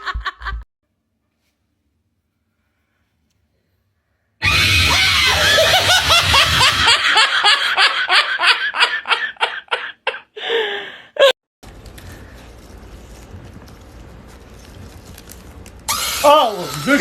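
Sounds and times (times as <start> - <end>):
loud laughter: 4.4 - 10.3.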